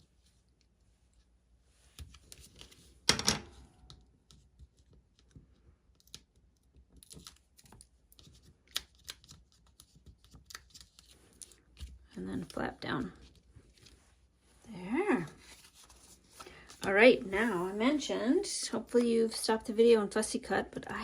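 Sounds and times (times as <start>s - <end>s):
paper rustling: 15.1s - 18.2s.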